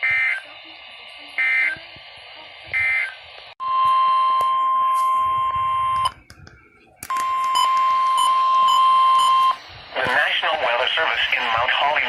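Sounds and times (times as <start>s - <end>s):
digital data tones: 7.1s - 9.6s.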